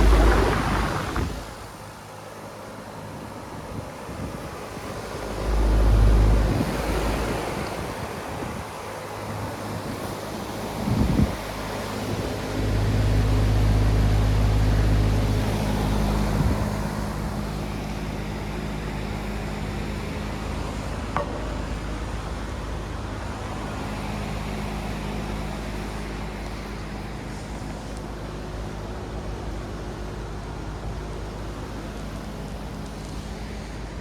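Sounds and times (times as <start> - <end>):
heat pump compressor hum: 0.0 - 2.0
fan noise: 0.0 - 34.0.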